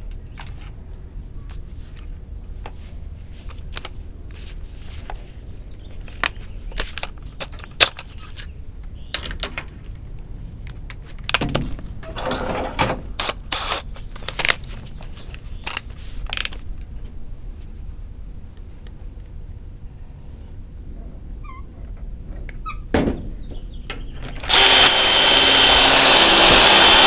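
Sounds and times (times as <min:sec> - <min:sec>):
scraping rustle: 0:01.6 - 0:07.0.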